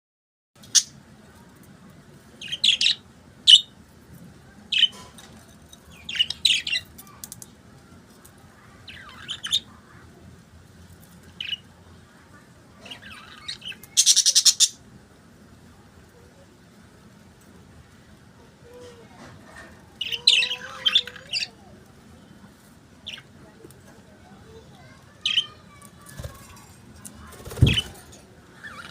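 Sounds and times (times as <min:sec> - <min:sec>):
budgerigars chirping: 0:12.8 - 0:14.8.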